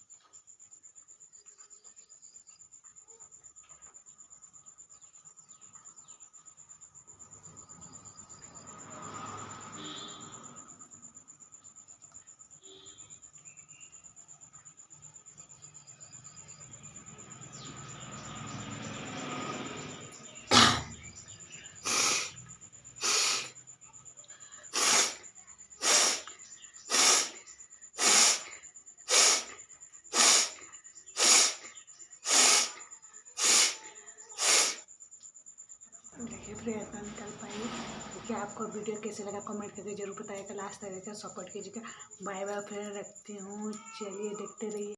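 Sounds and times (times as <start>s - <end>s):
woman sneezing: 20.5s - 20.9s, 24.6s - 25.2s, 25.8s - 26.3s, 26.9s - 27.4s, 28.0s - 28.5s, 29.1s - 29.5s, 30.1s - 30.6s, 31.2s - 32.8s, 33.4s - 34.8s.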